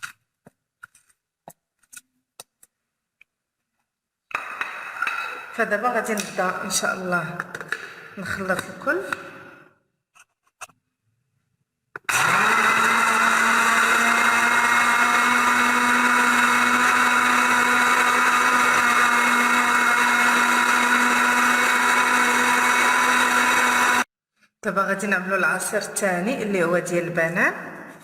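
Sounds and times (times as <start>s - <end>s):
electric blender running: 12.0s - 24.1s.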